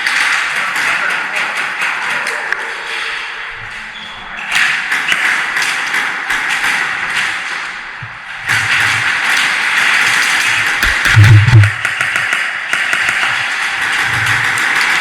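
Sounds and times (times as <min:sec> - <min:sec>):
bbs striking hard surfaces: 0:10.8 - 0:13.3.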